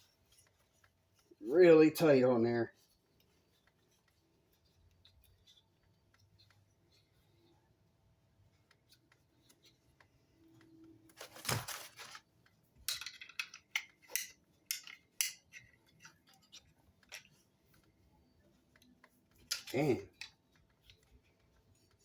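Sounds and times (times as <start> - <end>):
metal tools clicking and clanking: 12.8 - 17.4.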